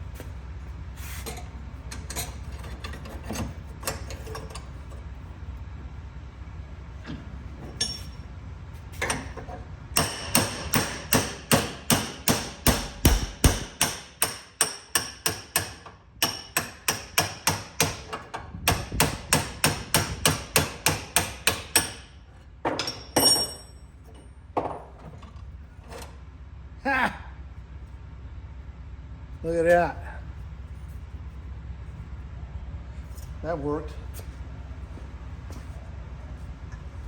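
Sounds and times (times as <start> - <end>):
hammer striking metal: 10.0 - 18.0, 18.7 - 22.1.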